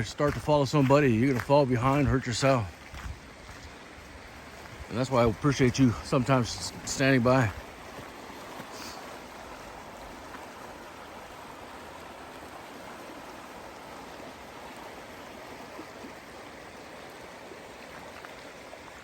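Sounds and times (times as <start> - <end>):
stream running: 0.0 - 19.0.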